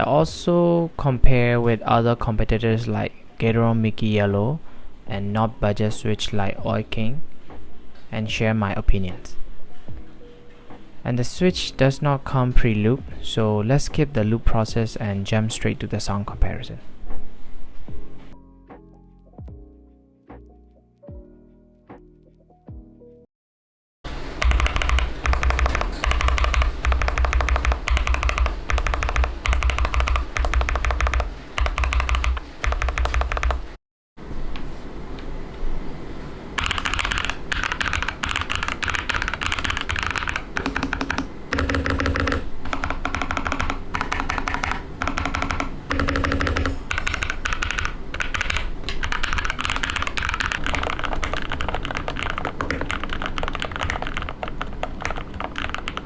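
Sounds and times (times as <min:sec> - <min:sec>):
mechanical keyboard typing: 0:24.4 - 0:33.8, 0:36.6 - 0:56.0.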